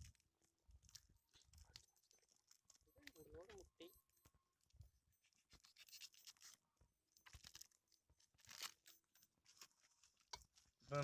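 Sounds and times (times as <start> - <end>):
food scratching and crunching: 5.2 - 11.0.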